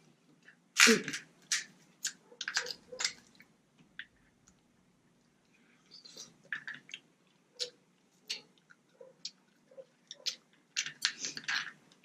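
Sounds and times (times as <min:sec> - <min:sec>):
chewing: 0:06.0 - 0:12.0.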